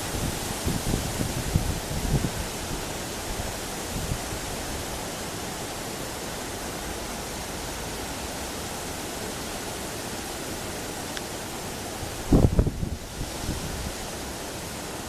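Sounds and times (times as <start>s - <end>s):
wind gust buffeting microphone: 0.0s - 4.5s, 12.0s - 14.0s
rushing wind: 0.0s - 15.0s.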